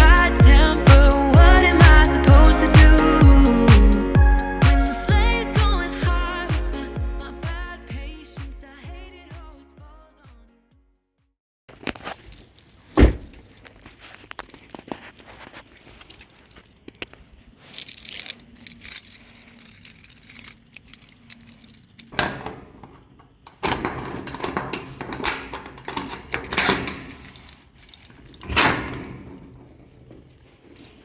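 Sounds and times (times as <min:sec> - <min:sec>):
small hard objects clinking: 0:11.7 - 0:22.2.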